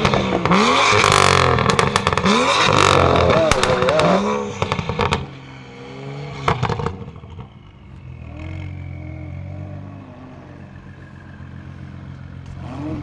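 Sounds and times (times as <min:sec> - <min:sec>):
exhaust crackles and pops: 0:00.0 - 0:05.3, 0:06.4 - 0:08.6
car engine idling: 0:06.4 - 0:13.0.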